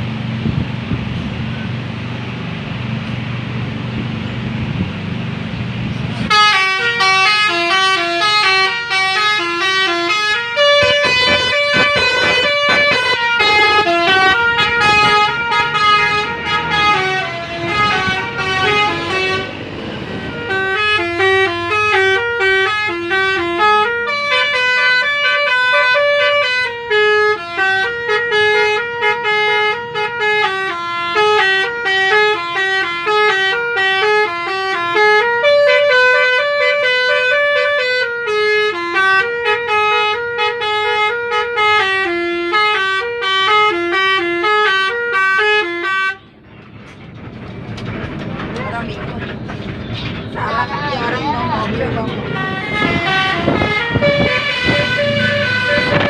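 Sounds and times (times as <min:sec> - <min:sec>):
bus engine idling: 0:00.0 - 0:56.0
musical air horn tune: 0:06.3 - 0:19.6, 0:52.2 - 0:56.0.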